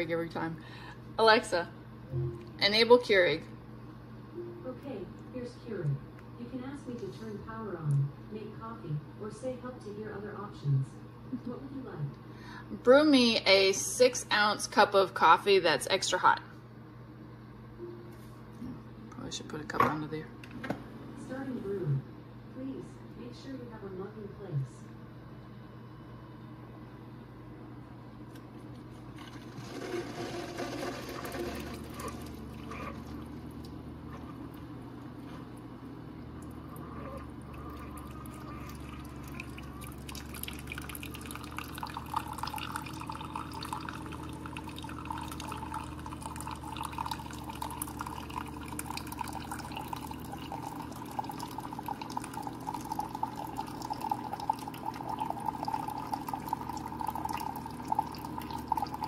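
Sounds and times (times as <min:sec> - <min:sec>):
coffee maker humming: 0:00.0 - 0:05.1, 0:12.2 - 0:16.4, 0:27.6 - 0:59.0
coffee trickling into mug: 0:29.0 - 0:34.7, 0:36.4 - 0:59.0.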